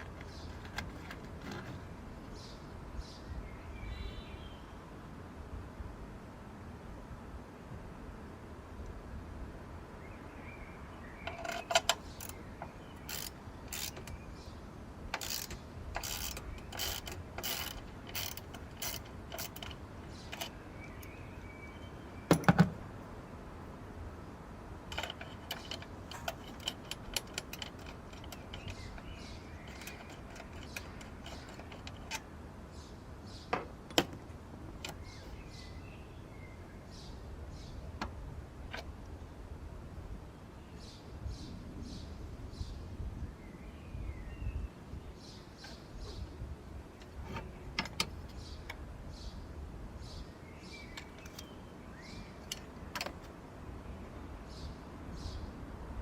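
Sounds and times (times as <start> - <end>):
socket ratchet clicking: 11.3 - 14.2, 15.1 - 21.2, 24.9 - 32.3
metal knock: 22.3 - 22.8, 33.5 - 34.2.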